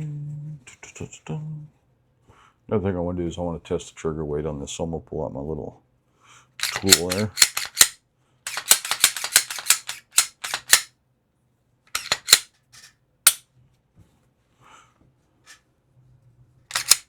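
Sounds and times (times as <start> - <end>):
hard objects clicking and clacking: 6.6 - 10.9, 12.0 - 13.4, 16.7 - 17.0.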